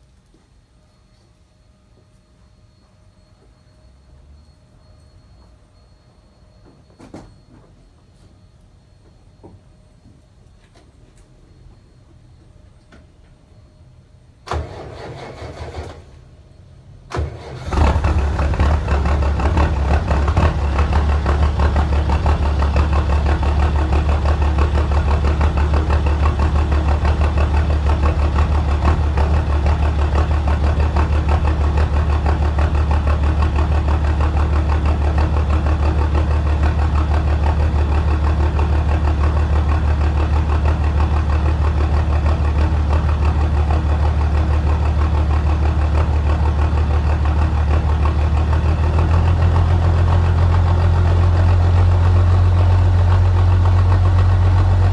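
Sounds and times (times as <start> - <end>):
diesel engine idling: 14.4 - 54.9
diesel engine cranking: 14.5 - 16.4, 17.1 - 54.9.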